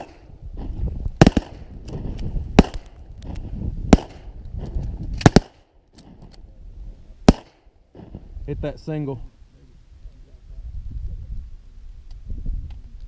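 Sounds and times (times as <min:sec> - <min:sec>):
shotgun shots: 0:00.0 - 0:03.0, 0:03.9 - 0:04.4, 0:05.2 - 0:06.3, 0:07.2 - 0:08.2.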